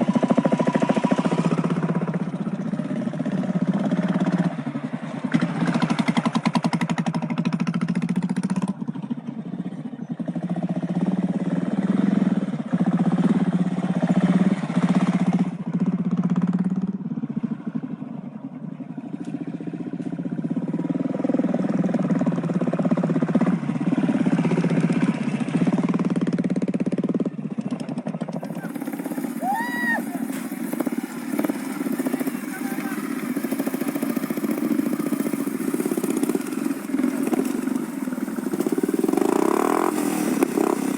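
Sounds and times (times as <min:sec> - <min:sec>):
motorcycle engine running at low revs: 0:00.0 - 0:40.9.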